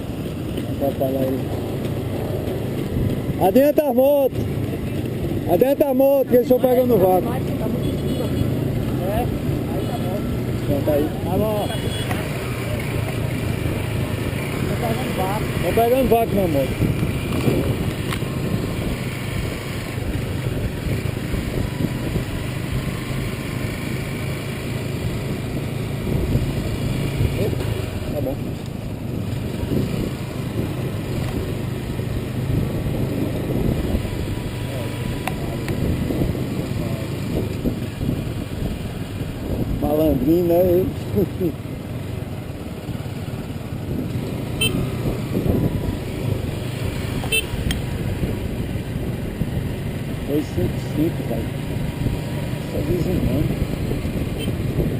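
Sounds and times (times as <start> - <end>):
motorcycle engine running: 0.0 - 54.9
wind rumbling on microphone: 14.9 - 23.0, 25.2 - 54.9.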